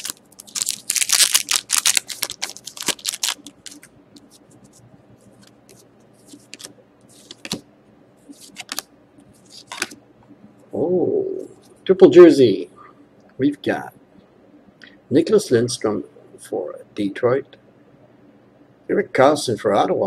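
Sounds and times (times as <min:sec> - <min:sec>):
wrapper tearing and crinkling: 0:00.0 - 0:03.9
cards rustling and clicking: 0:00.0 - 0:07.6, 0:08.3 - 0:10.0.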